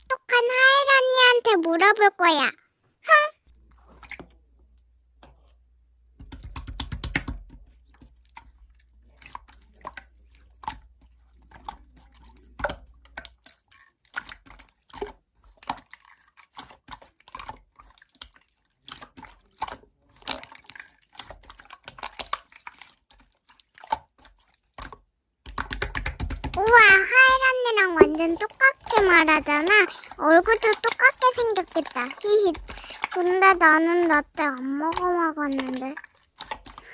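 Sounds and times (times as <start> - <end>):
slime squished by hand: 9.2 - 36.9.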